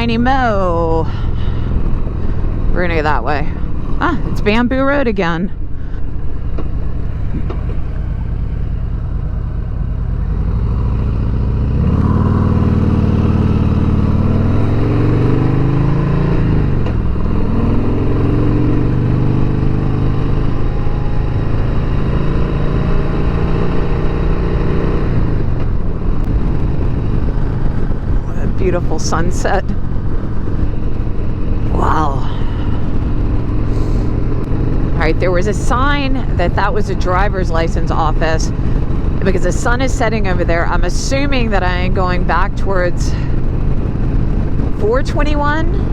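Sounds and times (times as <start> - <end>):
motorcycle engine accelerating: 0.0 - 45.9
wind rush: 10.2 - 45.9.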